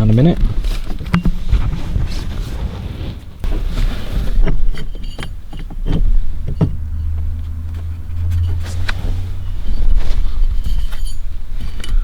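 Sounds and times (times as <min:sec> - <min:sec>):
handling knocks and clicks: 0:00.1 - 0:01.8, 0:04.3 - 0:12.0
low hum: 0:03.4 - 0:12.0.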